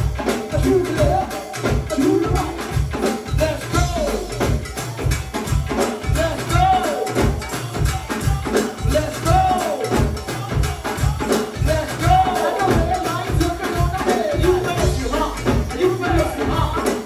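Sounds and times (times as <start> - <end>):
drum and percussion groove: 0.0 - 17.0
live band music: 0.0 - 17.0.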